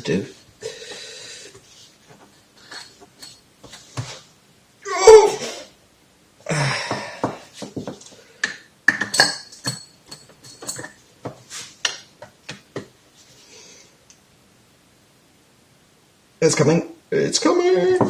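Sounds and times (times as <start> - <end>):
metal tool clinking and scraping: 2.6 - 3.9, 8.9 - 11.7.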